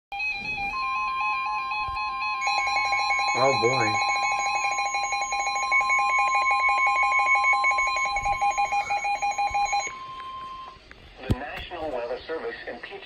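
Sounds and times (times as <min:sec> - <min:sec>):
loud steady alarm tone: 0:00.1 - 0:10.8
rapidly pulsing beep: 0:00.6 - 0:10.8.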